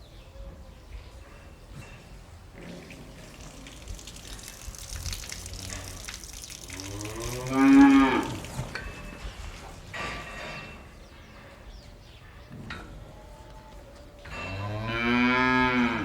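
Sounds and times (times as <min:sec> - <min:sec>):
cow mooing loudly: 0:06.8 - 0:08.5, 0:14.5 - 0:16.0.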